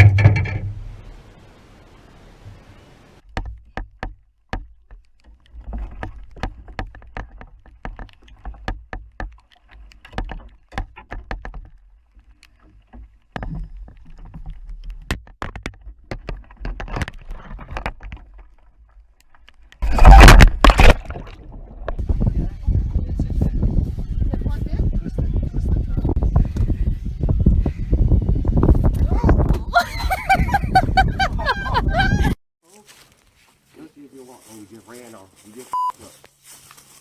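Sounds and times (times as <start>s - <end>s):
irregular knocks and clatter: 0.0s - 1.1s, 3.2s - 22.5s.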